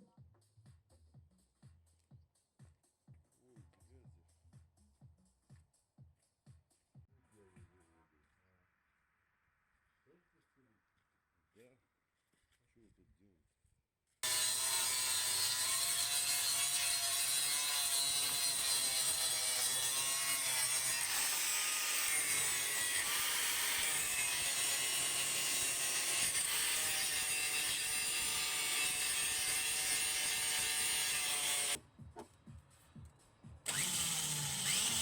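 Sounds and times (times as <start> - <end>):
power tool motor whine: 14.2 - 31.8, 33.7 - 35.0.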